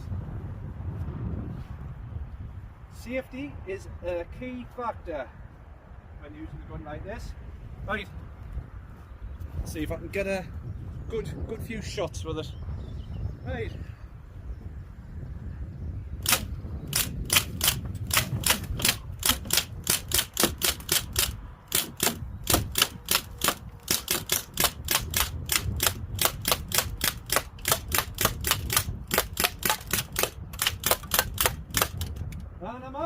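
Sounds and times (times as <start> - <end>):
bb gun shots: 16.2 - 32.2
bolt cycling: 16.2 - 32.4.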